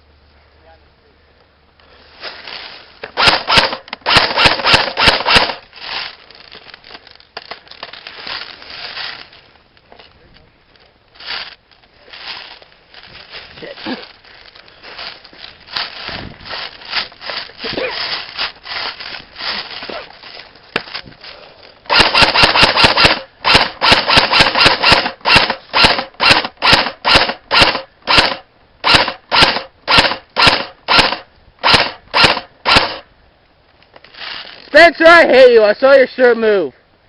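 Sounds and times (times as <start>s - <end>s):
rustling movement: 1.8s - 24.6s, 33.6s - 34.8s
airsoft rifle shots: 3.1s - 5.6s, 21.9s - 33.1s.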